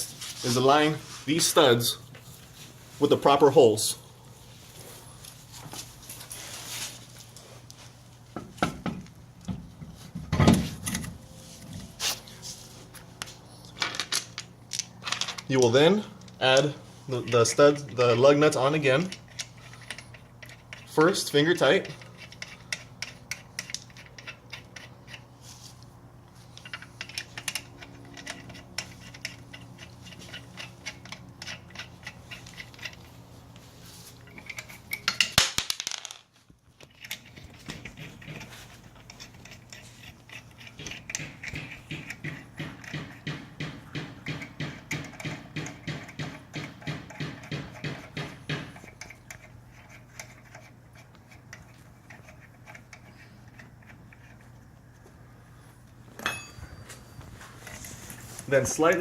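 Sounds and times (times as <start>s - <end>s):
lug nuts clicking onto studs: 36.9s - 54.4s.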